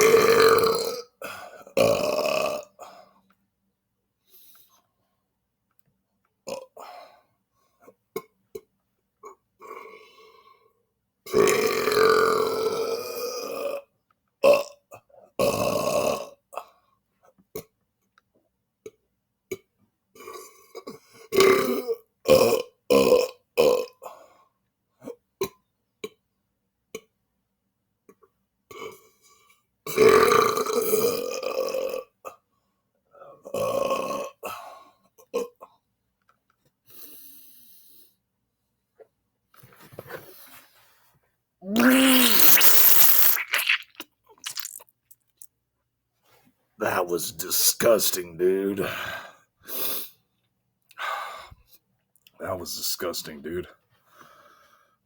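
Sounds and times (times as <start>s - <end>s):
man belching: 0.0s - 1.0s, 41.7s - 44.8s.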